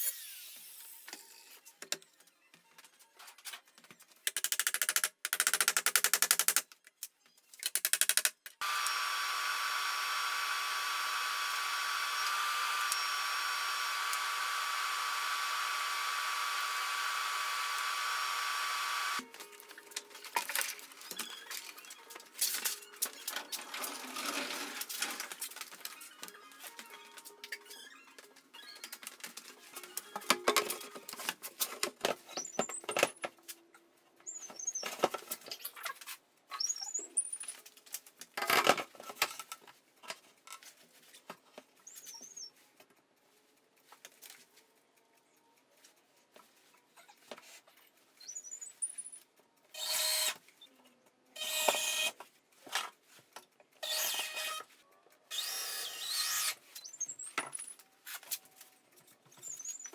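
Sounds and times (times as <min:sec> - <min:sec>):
power tool running: 0:08.6 - 0:19.2.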